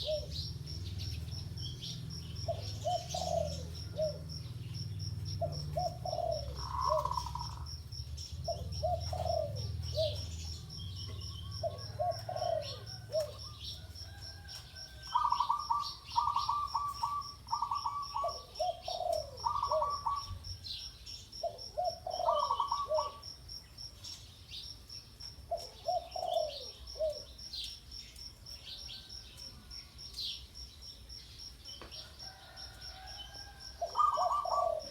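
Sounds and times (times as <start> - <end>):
dove cooing: 0.0 - 20.6, 21.4 - 23.2, 25.5 - 27.4, 32.2 - 34.9
pulsing insect trill: 0.0 - 34.9
small birds chirping: 0.0 - 34.9.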